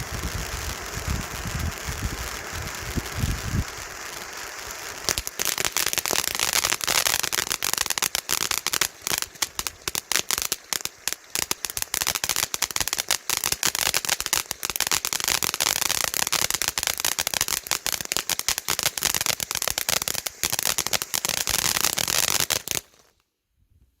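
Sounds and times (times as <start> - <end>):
firework fountain crackling: 0.0 - 23.2.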